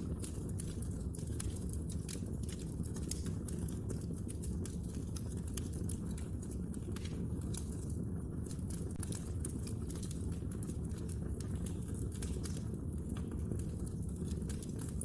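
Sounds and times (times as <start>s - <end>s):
logs crackling and popping: 0.0s - 15.0s
low rumble of flames: 0.0s - 15.0s.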